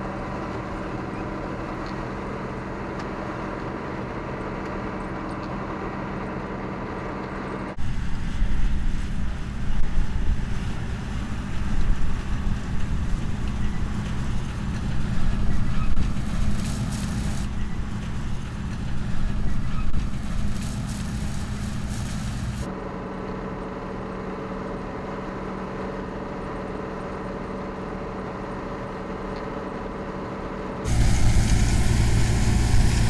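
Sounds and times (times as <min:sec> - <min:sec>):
diesel engine running under load: 0:07.3 - 0:22.7, 0:30.9 - 0:33.0
hiss: 0:07.8 - 0:22.7, 0:30.9 - 0:33.0
uneven engine rumble: 0:07.8 - 0:22.7, 0:30.9 - 0:33.0.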